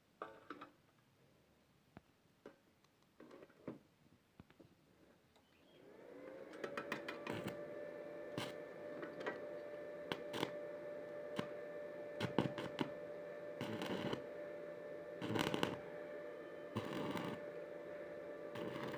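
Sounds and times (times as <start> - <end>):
small machine whining: 5.4 - 18.9
crackling bursts: 15.2 - 15.8.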